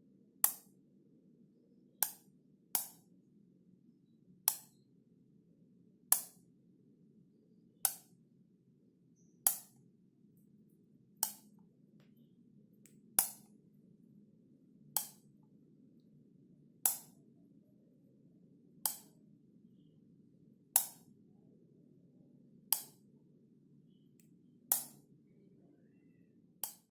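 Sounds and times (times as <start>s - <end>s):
faint low hum: 0.0s - 26.9s.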